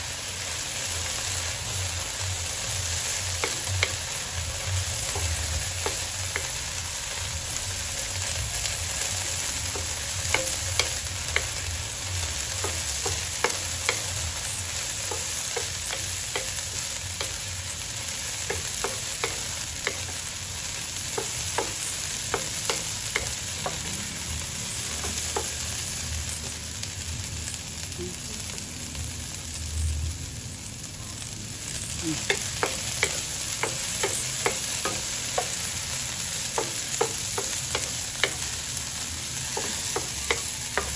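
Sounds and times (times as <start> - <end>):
beans sizzling in oil: 0.0 - 40.9
spatula clicking on pan: 3.0 - 4.2, 4.9 - 6.6, 8.6 - 11.7, 12.4 - 20.3, 20.9 - 24.0, 24.8 - 25.8, 32.2 - 40.9.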